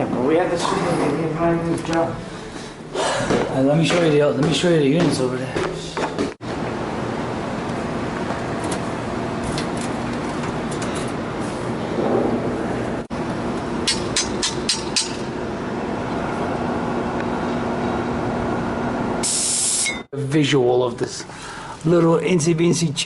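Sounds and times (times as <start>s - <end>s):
mechanical rumble with hum: 6.4s - 20.0s.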